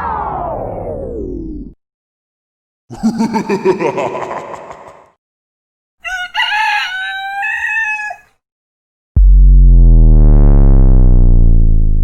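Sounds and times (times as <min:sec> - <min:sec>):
rooster crowing: 0:06.0 - 0:08.4
loud distorted low musical note: 0:09.2 - 0:12.0.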